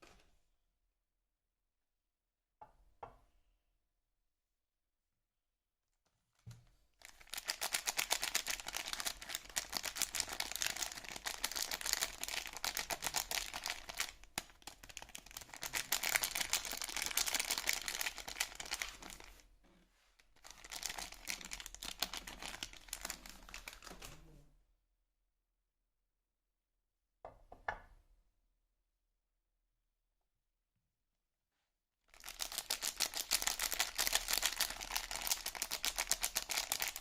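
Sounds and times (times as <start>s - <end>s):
packaging crinkling and rustling: 7.0s - 19.4s, 20.4s - 24.3s, 32.2s - 37.0s.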